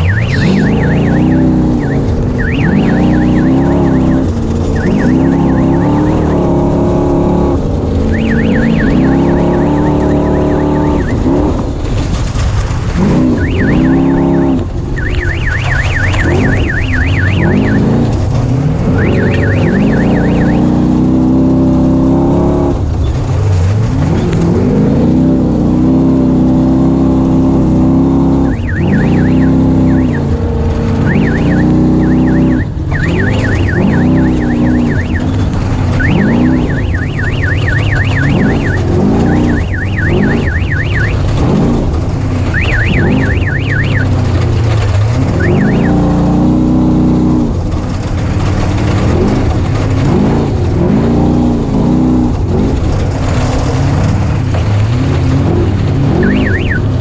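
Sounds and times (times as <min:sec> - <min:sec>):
warbling electronic alarm: 0:00.0 - 0:11.5, 0:13.1 - 0:18.0, 0:18.9 - 0:21.0, 0:28.3 - 0:30.3, 0:31.0 - 0:41.6, 0:42.5 - 0:44.3, 0:45.4 - 0:46.2, 0:56.2 - 0:56.9
race vehicle engine revving: 0:00.0 - 0:57.0.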